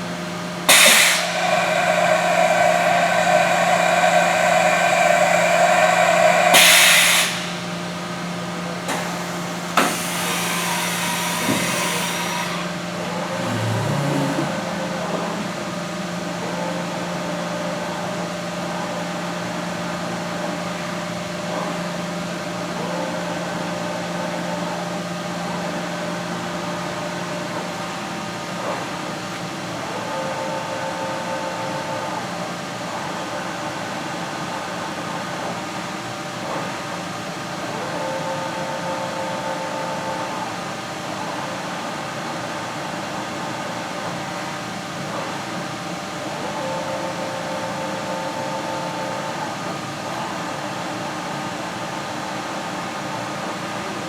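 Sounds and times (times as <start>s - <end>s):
short rising whine: 0.0s - 8.7s, 9.6s - 15.0s
machine humming: 0.0s - 15.1s
loud hissing bursts: 0.4s - 8.2s.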